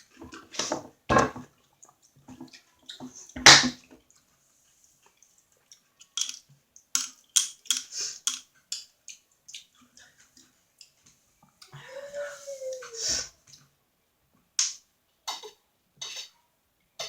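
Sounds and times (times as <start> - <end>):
chewing with wet mouth clicks: 5.1 - 10.1.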